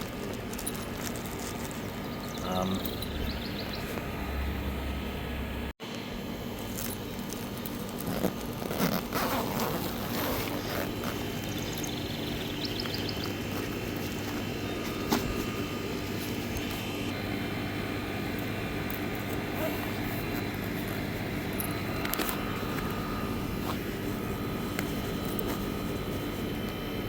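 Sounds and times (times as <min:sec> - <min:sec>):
zipper running: 0:00.0 - 0:03.9, 0:06.6 - 0:17.2, 0:19.1 - 0:27.0
fabric rustling and scraping: 0:06.6 - 0:11.5, 0:23.4 - 0:26.6.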